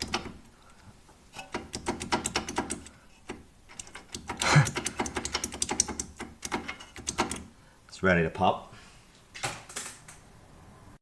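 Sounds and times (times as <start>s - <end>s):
hand tools clicking on metal: 1.4s - 7.5s.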